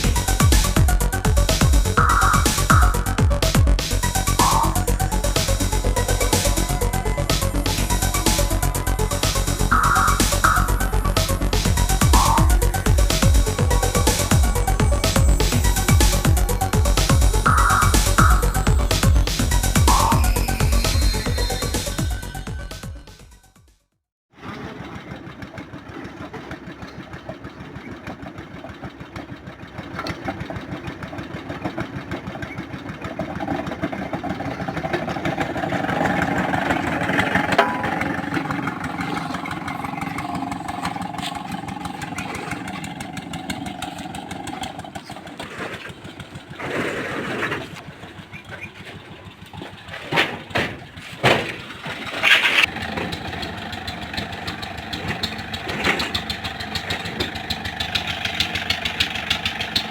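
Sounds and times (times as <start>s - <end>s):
boring machine engine running: 0.0s - 22.3s, 24.5s - 59.9s
sharp metal clanks: 37.5s - 38.7s.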